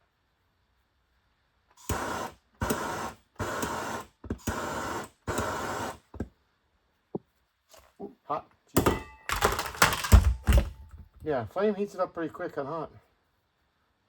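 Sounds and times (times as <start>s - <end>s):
gas torch flame hissing: 1.8s - 6.2s.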